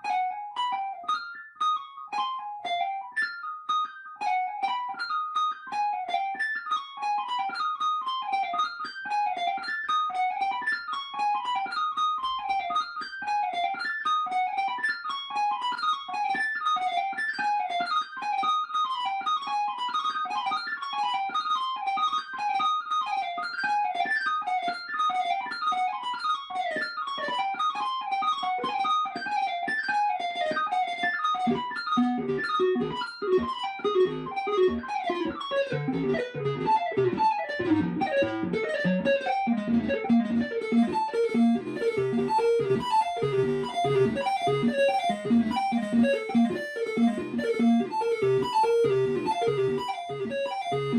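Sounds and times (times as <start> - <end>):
synthesizer sequenced plucky notes: 26.8 - 50.9.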